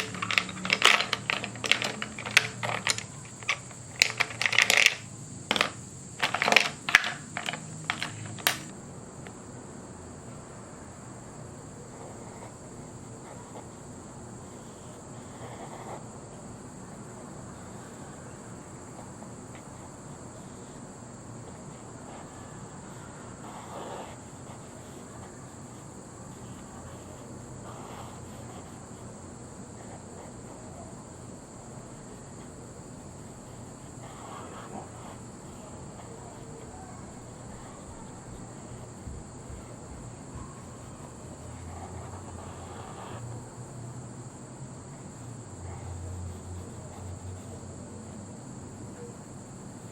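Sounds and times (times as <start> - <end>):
sharp light clicks and taps: 0.0 - 9.4.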